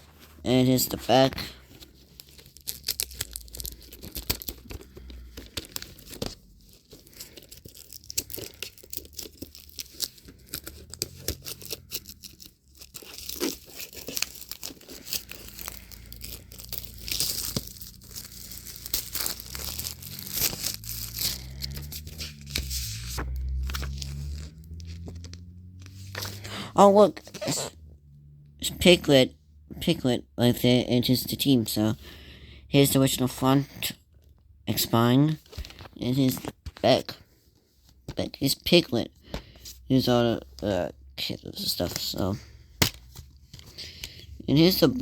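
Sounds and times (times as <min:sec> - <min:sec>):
plastic wrap crinkling: 0:01.4 - 0:25.4.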